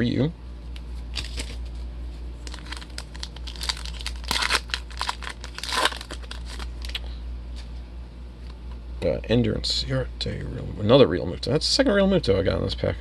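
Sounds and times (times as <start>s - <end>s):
low steady hum: 0.0s - 13.0s
wrapper crinkling and tearing: 2.4s - 7.0s.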